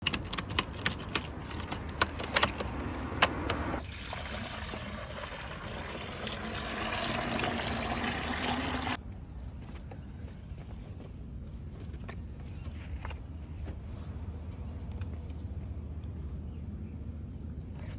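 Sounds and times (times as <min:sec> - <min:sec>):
sharp clicks and knocks: 0:00.0 - 0:03.8
pouring water: 0:03.8 - 0:09.0.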